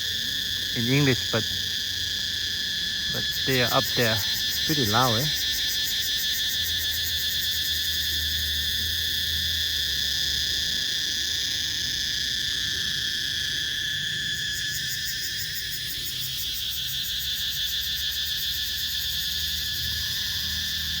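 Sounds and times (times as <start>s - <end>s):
chorus of night insects: 0.0s - 21.0s.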